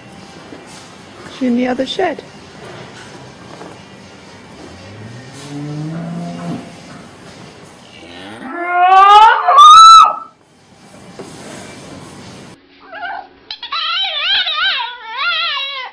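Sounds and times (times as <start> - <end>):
cow mooing: 4.7 - 7.0, 7.9 - 10.2.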